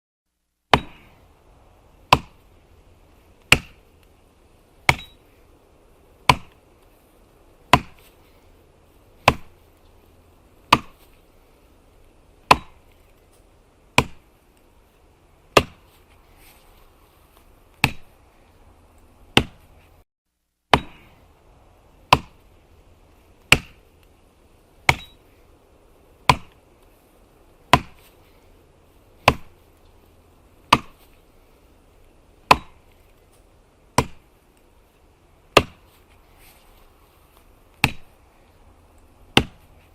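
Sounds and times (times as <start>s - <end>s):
axe chopping wood: 0.7s - 1.2s, 2.0s - 2.5s, 3.4s - 4.0s, 4.8s - 5.2s, 6.2s - 6.6s, 7.7s - 8.3s, 9.2s - 9.8s, 10.6s - 11.2s, 12.4s - 13.0s, 13.9s - 14.3s, 15.5s - 16.0s, 17.7s - 18.2s, 19.3s - 19.7s, 20.7s - 21.2s, 22.0s - 22.5s, 23.4s - 23.8s, 24.8s - 25.2s, 26.2s - 26.6s, 27.7s - 28.2s, 29.2s - 29.7s, 30.6s - 31.2s, 32.4s - 33.0s, 34.0s - 34.3s, 35.5s - 36.0s, 37.7s - 38.2s, 39.3s - 39.9s.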